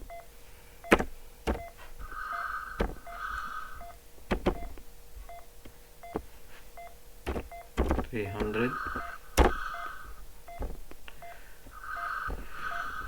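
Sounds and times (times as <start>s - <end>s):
two-part electronic alarm tone: 2.2s - 4.0s, 8.2s - 10.7s, 11.3s - 13.0s
sharp clicks with electronic blips: 6.8s - 11.4s.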